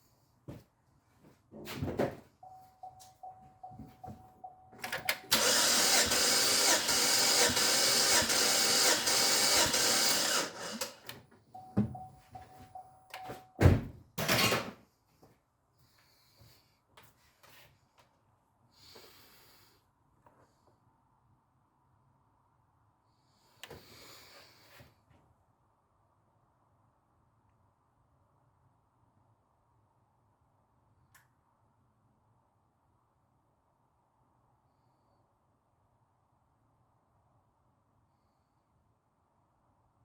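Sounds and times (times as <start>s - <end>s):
warning chime beeping: 2.4s - 5.3s, 11.6s - 13.6s
engine cranking on starter: 4.9s - 11.2s.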